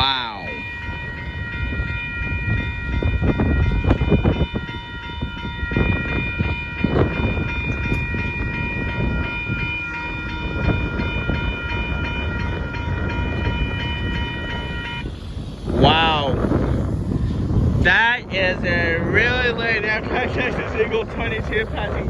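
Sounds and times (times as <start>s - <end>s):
train horn: 0.0s - 15.9s
train cars rumbling on rails: 0.0s - 22.0s.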